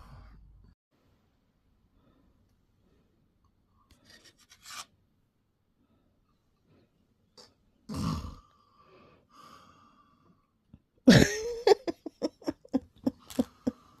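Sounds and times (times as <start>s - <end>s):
man snoring: 7.9s - 8.6s.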